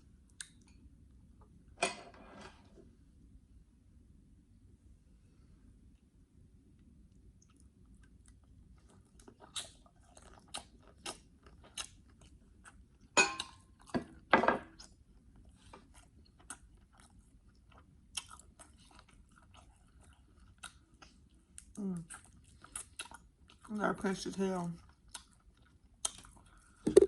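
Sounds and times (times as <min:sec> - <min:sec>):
person chewing food: 0:07.1 - 0:23.7, 0:24.8 - 0:27.0.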